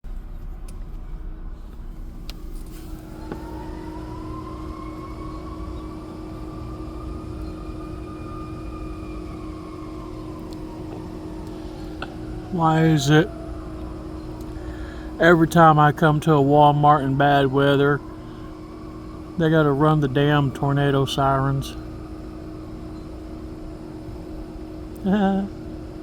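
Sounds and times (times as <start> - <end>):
low hum and rumble: 0.0 - 26.0
siren wailing: 2.8 - 26.0.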